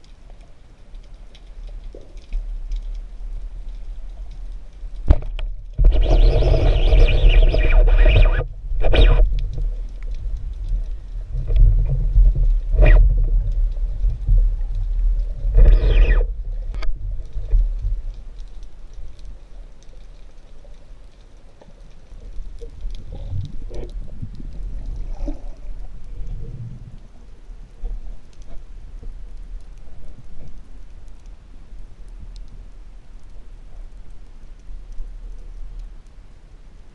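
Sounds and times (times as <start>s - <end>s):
underwater water rumble: 0.0s - 36.9s
hissing bursts: 5.9s - 9.2s, 15.5s - 16.3s.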